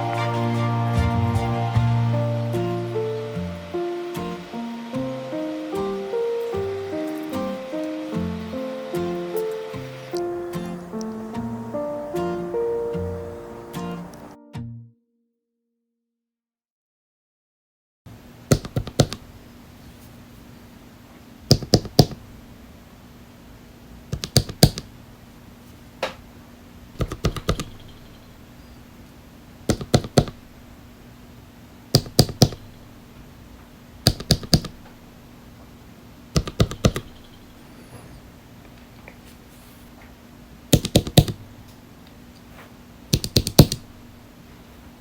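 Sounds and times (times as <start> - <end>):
faint steady hum: 0.0 - 14.4, 18.1 - 45.0
clicky keyboard presses: 21.5 - 22.2, 24.2 - 24.9, 27.0 - 27.9, 29.7 - 30.4, 32.0 - 32.6, 34.1 - 34.8, 36.4 - 37.2, 40.8 - 41.4, 43.1 - 43.8.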